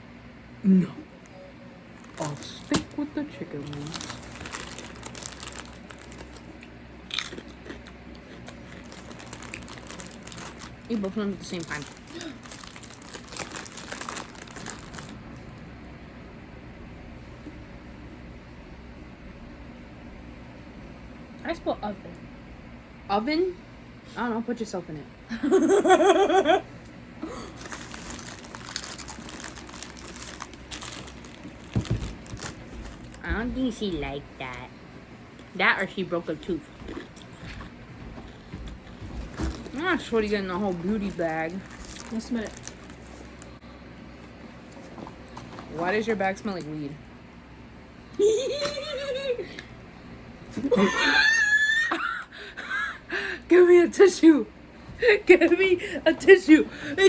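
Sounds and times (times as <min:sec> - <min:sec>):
person chewing crunchy chips: 0:02.0 - 0:03.0, 0:03.6 - 0:15.2, 0:27.2 - 0:33.2, 0:36.6 - 0:37.7, 0:39.2 - 0:43.6
person speaking: 0:02.0 - 0:04.8, 0:39.5 - 0:42.6
plastic packet crinkling: 0:02.0 - 0:15.2, 0:27.3 - 0:33.2, 0:39.2 - 0:43.6.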